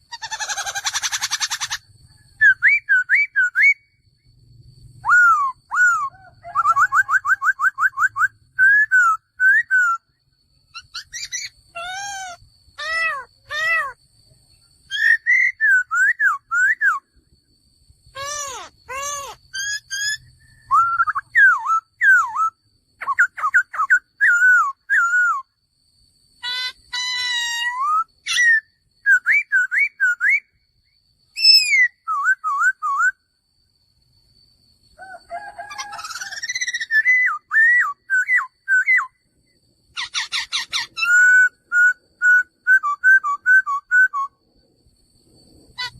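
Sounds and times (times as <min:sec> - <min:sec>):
bird singing whistled phrases: 0:02.4 - 0:04.0, 0:05.0 - 0:10.1, 0:10.8 - 0:13.9, 0:14.9 - 0:17.1, 0:18.2 - 0:25.5, 0:26.4 - 0:30.6, 0:31.4 - 0:33.2, 0:35.8 - 0:39.2, 0:40.0 - 0:44.4.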